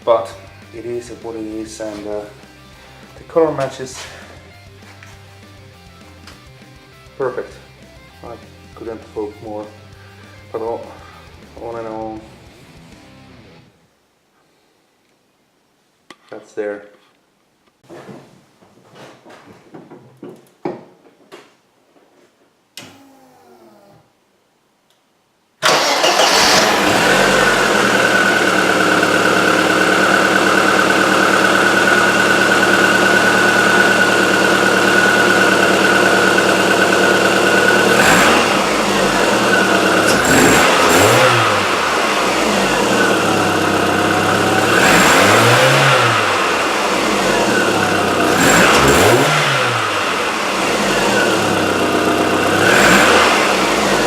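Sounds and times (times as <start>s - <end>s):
car engine starting and revving: 25.6s - 54.0s
high whine over engine idle: 26.6s - 54.0s.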